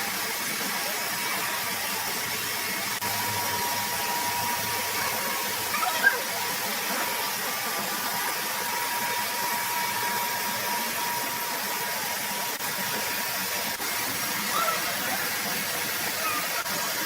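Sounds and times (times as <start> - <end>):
sawmill machinery hissing: 0.0 - 17.0.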